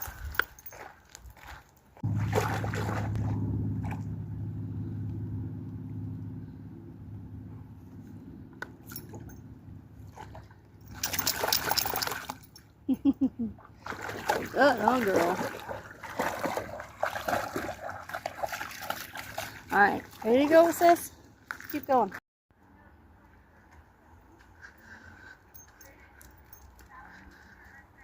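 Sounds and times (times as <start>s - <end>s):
low motor-like hum: 2.0s - 21.3s.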